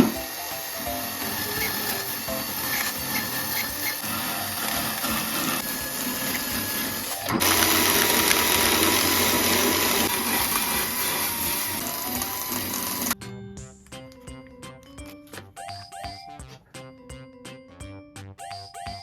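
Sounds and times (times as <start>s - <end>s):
power tool rasping on surface: 0.0s - 13.2s.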